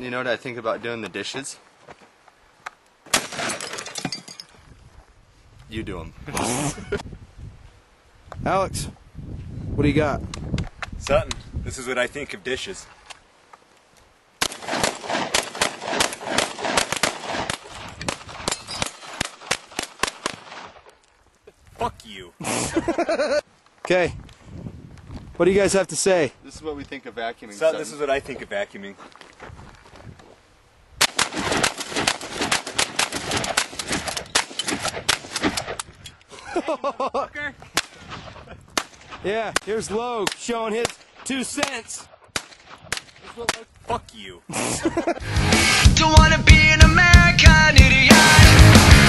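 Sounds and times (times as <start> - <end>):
gunshots: 3.1 - 3.7, 14.4 - 20.8, 31.0 - 35.8
rapid gunfire: 14.4 - 20.7, 31.0 - 35.8.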